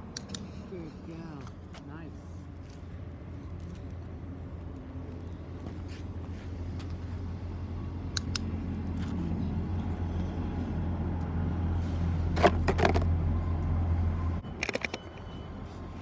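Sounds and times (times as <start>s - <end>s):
vehicle engine humming: 0.0s - 16.0s
sharp clicks: 0.1s - 0.5s.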